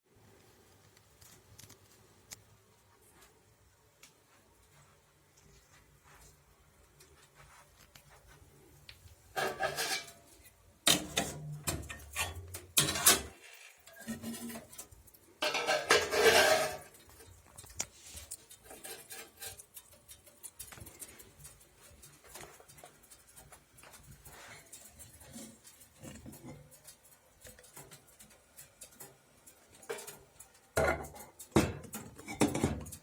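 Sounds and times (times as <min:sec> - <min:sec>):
metal pots clattering and scraping: 0:09.3 - 0:33.0.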